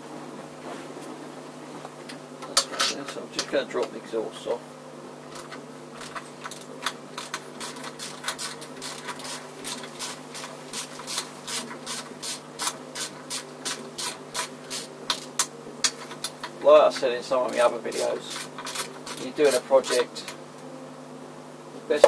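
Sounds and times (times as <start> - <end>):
hand tools clicking on metal: 13.6 - 20.4.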